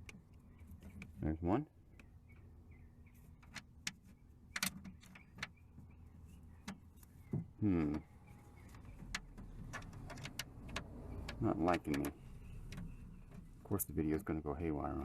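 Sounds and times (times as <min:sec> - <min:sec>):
person murmuring: 0:07.6 - 0:08.0.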